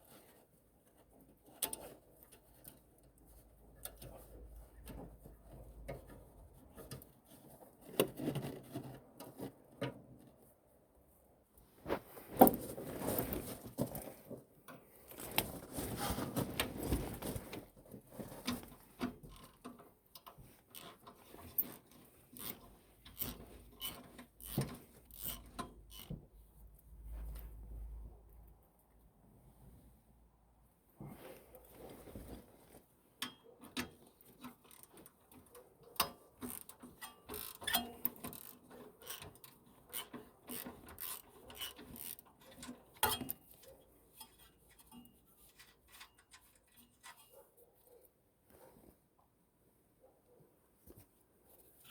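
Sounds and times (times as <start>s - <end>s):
rubbing and scraping: 15.1s - 19.0s.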